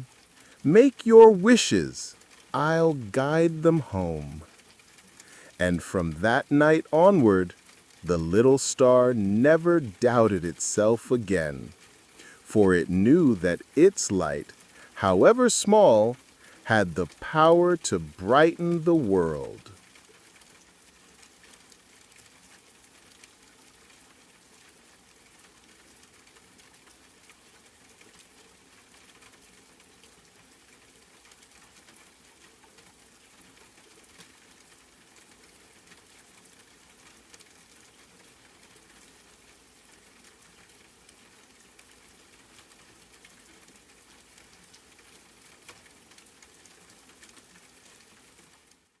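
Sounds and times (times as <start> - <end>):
rain hiss: 0.0 - 48.7.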